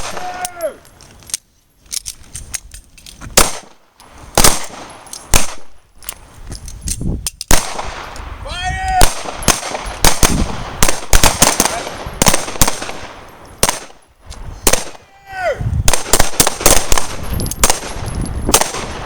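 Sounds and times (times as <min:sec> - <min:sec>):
handguns firing: 0:03.4 - 0:03.8, 0:04.4 - 0:05.7, 0:07.4 - 0:08.2, 0:09.0 - 0:14.0, 0:15.9 - 0:19.0.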